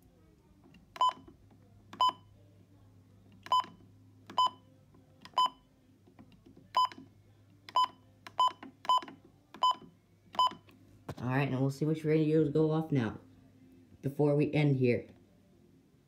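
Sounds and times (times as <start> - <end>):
keypad beeps: 0.9 - 1.3, 2.0 - 2.3, 3.4 - 4.6, 5.3 - 5.6, 6.7 - 7.1, 7.7 - 10.7.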